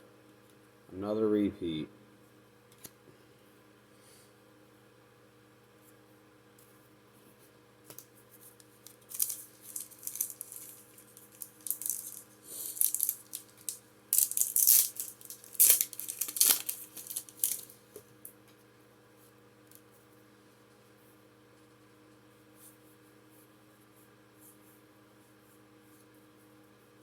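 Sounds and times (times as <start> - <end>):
faint electrical hum: 0.0 - 27.0
foil wrapper tearing and crinkling: 8.6 - 17.9.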